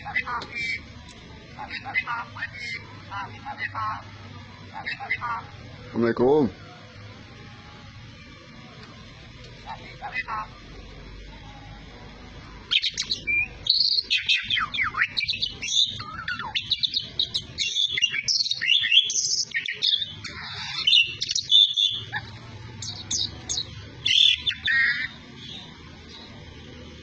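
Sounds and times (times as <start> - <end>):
starling singing whistles and chatter: 1.5 - 5.7, 12.7 - 26.5.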